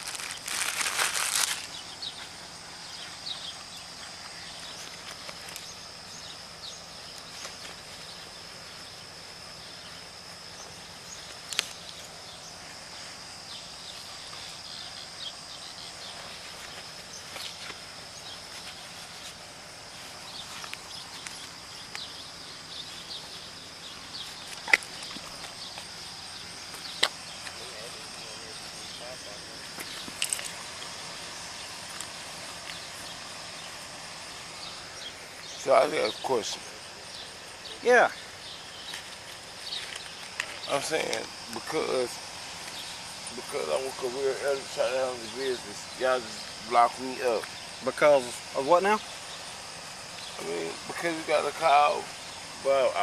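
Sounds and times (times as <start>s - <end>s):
rustling: 0.0s - 2.4s
high-pitched insect drone: 0.0s - 53.0s.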